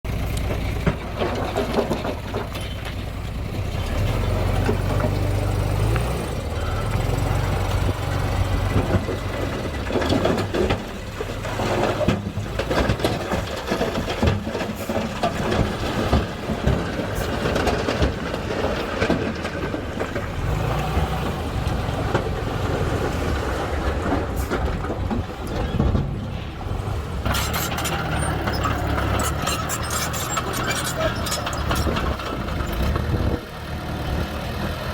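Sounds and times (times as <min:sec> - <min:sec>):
truck engine running: 0:00.1 - 0:34.9
stone load clattering out: 0:00.8 - 0:03.1.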